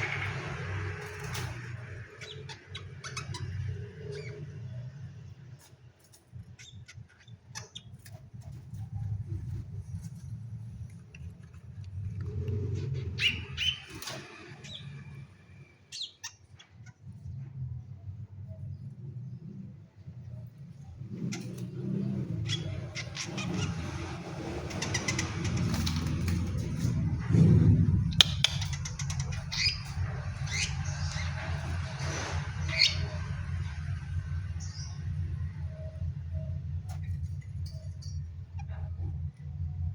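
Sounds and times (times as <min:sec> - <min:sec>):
low steady rumble: 0:00.0 - 0:39.9
steady low hum: 0:00.0 - 0:39.9
bird harsh squawking calls: 0:12.7 - 0:15.2, 0:21.1 - 0:26.1, 0:28.2 - 0:33.4
bird wings fluttering: 0:24.5 - 0:27.5.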